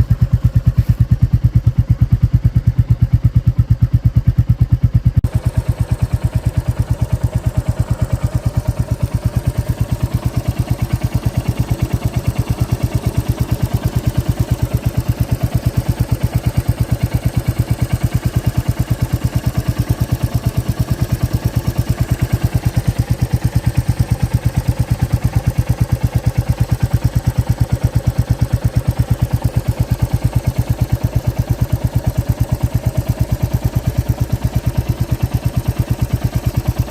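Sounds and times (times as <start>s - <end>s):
motorcycle engine idling: 0.0s - 36.9s.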